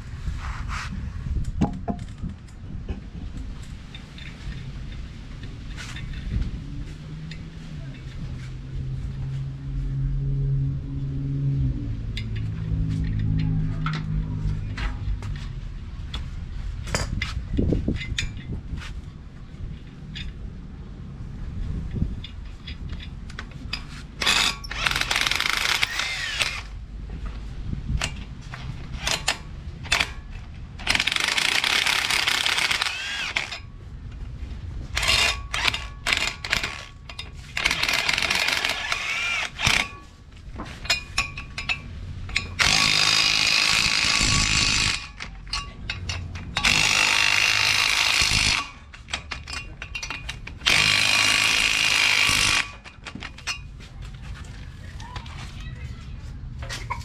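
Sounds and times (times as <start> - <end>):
power tool bursts: 24.2 - 26.7, 30.8 - 33.6, 35.0 - 36.9, 37.6 - 40.0, 42.6 - 45.2, 46.6 - 48.8, 50.6 - 52.8.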